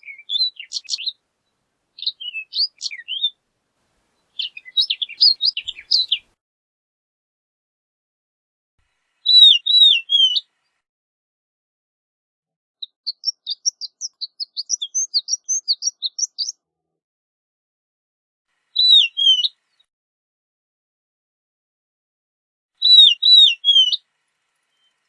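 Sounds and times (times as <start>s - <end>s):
lark singing: 0.0s - 3.4s, 4.2s - 6.3s, 9.3s - 10.5s, 12.8s - 16.6s, 18.8s - 19.6s, 22.8s - 24.0s.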